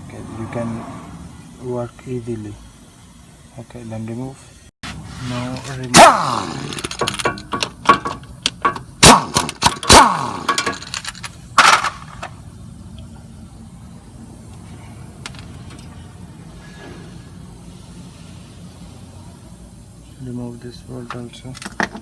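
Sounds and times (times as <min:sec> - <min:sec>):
low steady background noise: 0:00.0 - 0:22.0
hand tools clanking on metal: 0:05.5 - 0:12.2.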